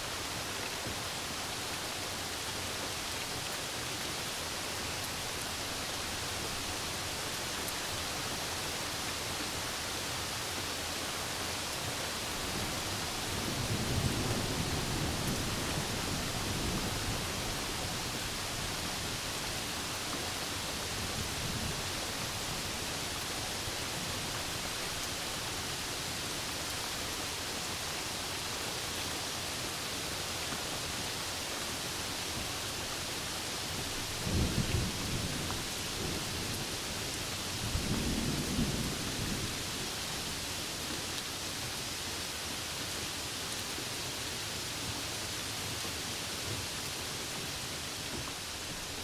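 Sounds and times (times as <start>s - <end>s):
rain hiss: 0.0s - 49.0s
low rumble of thunder: 12.4s - 19.0s, 34.0s - 40.3s.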